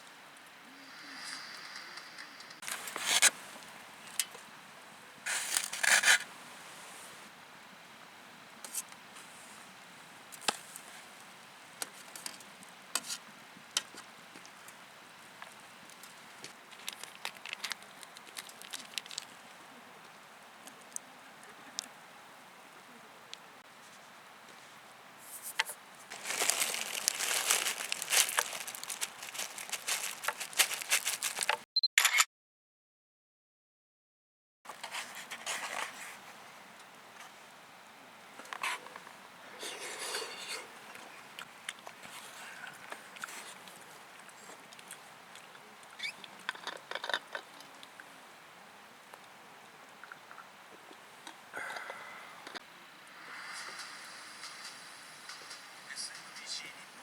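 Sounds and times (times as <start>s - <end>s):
handling scrapes: 2.6s - 3.6s, 5.3s - 7.3s, 25.2s - 31.6s, 39.6s - 40.7s
packaging crinkling: 5.3s - 6.2s, 16.4s - 19.5s, 26.1s - 31.6s.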